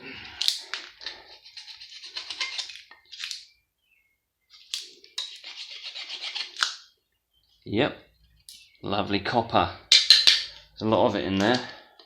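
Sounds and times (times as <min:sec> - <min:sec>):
metal parts scraping and clinking: 0:00.4 - 0:03.4, 0:04.6 - 0:06.7, 0:09.9 - 0:10.8.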